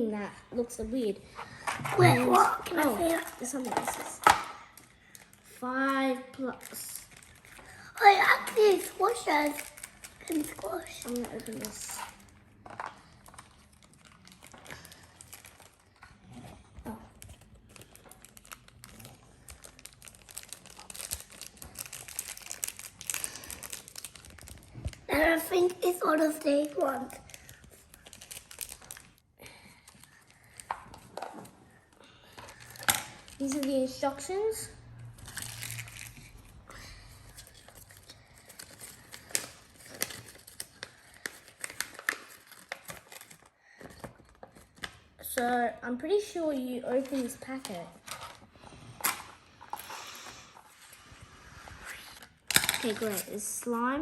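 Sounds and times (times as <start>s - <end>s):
toy packaging crinkling: 1.7s - 5.5s, 6.4s - 16.0s, 17.1s - 29.2s, 32.4s - 34.4s, 35.0s - 45.0s, 46.9s - 49.9s, 52.2s - 53.6s.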